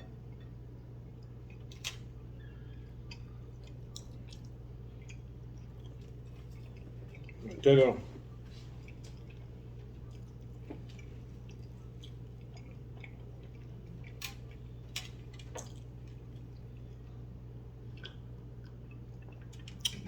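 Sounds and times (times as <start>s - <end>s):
steady low hum: 0.0s - 20.0s
chewing: 1.1s - 20.0s.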